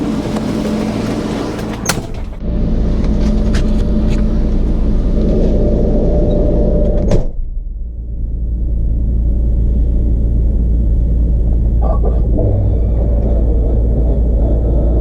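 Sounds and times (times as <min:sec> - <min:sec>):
vehicle door shutting: 0:00.0 - 0:02.4
engine idling hum: 0:00.0 - 0:15.0.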